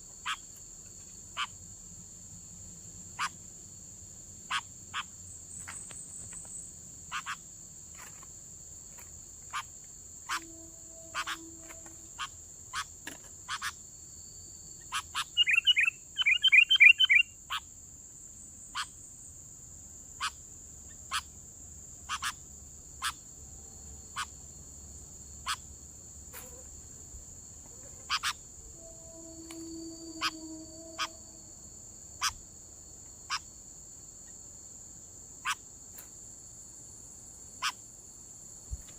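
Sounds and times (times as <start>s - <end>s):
insects buzzing: 0.0s - 38.9s
rapid chattering bird calls: 7.1s - 8.2s, 14.9s - 17.6s, 22.1s - 22.4s, 28.1s - 28.4s
bulbuls calling: 10.3s - 12.9s, 14.9s - 17.3s, 27.6s - 31.3s.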